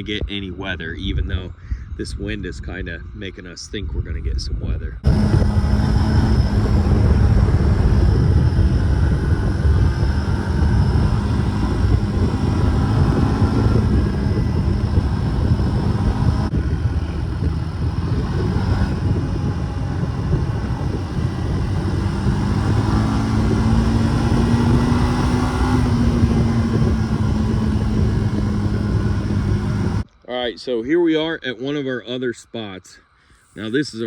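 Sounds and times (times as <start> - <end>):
wind buffeting microphone: 0.0 - 30.1
atv engine running: 5.0 - 30.1.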